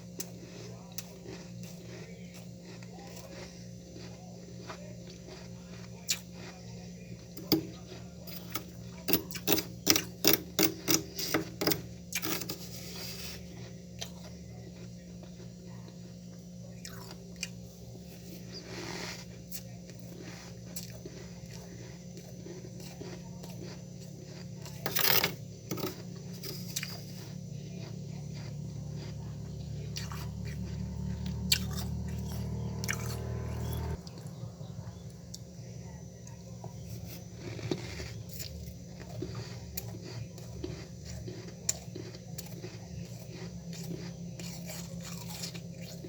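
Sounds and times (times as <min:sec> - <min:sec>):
steady low hum: 0:00.0 - 0:46.0
frost being scraped: 0:10.8 - 0:13.6, 0:18.5 - 0:19.4, 0:24.8 - 0:27.4.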